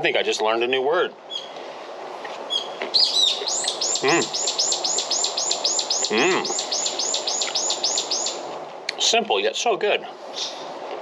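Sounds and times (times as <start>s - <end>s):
high rapid chirping call: 2.6s - 8.4s
man's short low vocal sounds: 4.0s - 4.3s, 6.1s - 6.6s.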